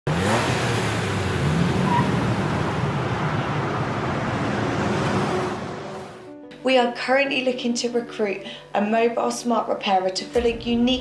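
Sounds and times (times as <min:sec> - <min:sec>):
car engine: 0:00.0 - 0:06.3
road noise: 0:00.0 - 0:06.3.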